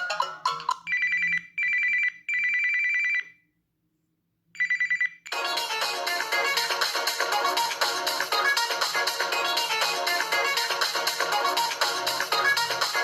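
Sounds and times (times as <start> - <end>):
electronic music ringtone: 0.0 - 1.4
telephone bell ringtone: 0.0 - 3.3, 4.6 - 5.6.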